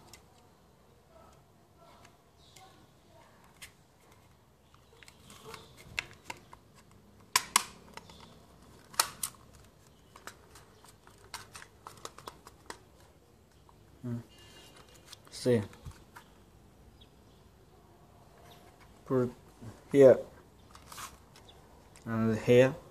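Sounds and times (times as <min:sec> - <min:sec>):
plastic toy gun clicks: 0:07.2 - 0:08.3, 0:08.9 - 0:09.4.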